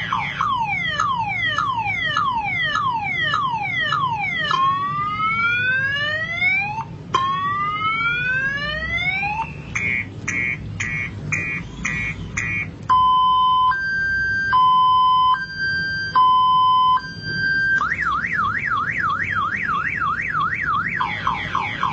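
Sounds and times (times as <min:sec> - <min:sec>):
multi-tone siren: 0:00.0 - 0:21.9.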